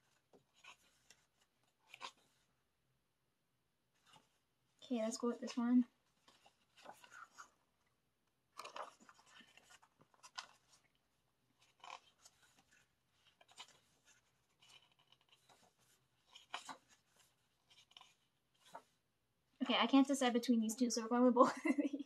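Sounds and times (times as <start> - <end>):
pages turning and rustling: 0.0 - 2.5, 3.9 - 4.4, 5.0 - 19.0.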